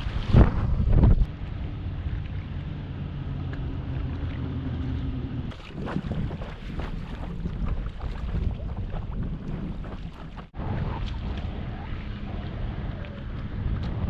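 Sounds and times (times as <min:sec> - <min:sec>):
steady low drone: 0:00.0 - 0:06.4, 0:10.5 - 0:14.0
water splashing: 0:00.0 - 0:14.0
wind buffeting microphone: 0:00.0 - 0:14.0.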